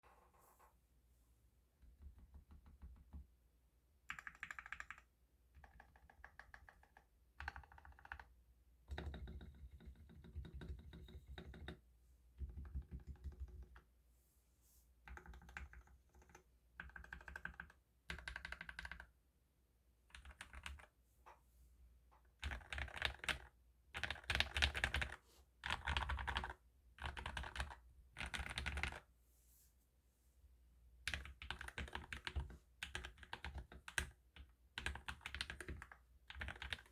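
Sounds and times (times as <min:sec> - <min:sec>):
mechanical keyboard typing: 0:04.1 - 0:08.3, 0:15.1 - 0:19.1, 0:20.1 - 0:20.8, 0:22.4 - 0:29.0, 0:31.1 - 0:34.2, 0:34.8 - 0:36.9.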